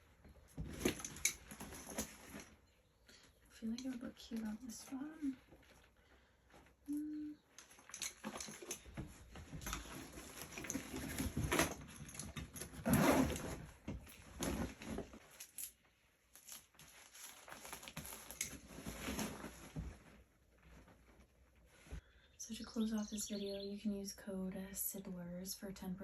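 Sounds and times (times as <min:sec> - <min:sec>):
fabric rustling and scraping: 0:07.6 - 0:15.6, 0:16.3 - 0:22.0.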